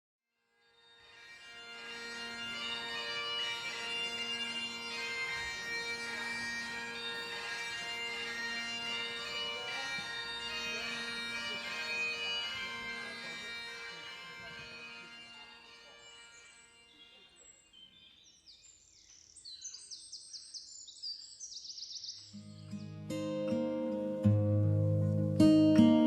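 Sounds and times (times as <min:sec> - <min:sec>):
bagpipes playing a melody: 0:00.7 - 0:17.9.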